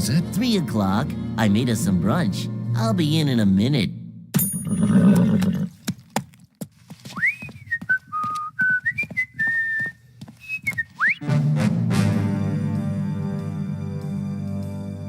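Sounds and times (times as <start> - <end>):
person whistling a tune: 7.1 - 11.3.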